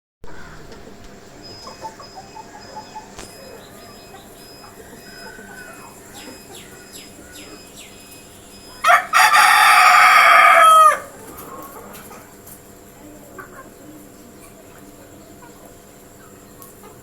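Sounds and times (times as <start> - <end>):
faint high chirps: 0.3 - 9.1
rooster crowing: 2.4 - 7.9, 8.6 - 11.9.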